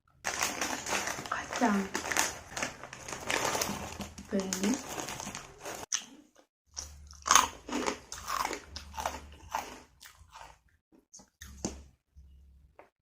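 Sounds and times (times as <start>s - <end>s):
person chewing crunchy food: 4.8s - 11.9s.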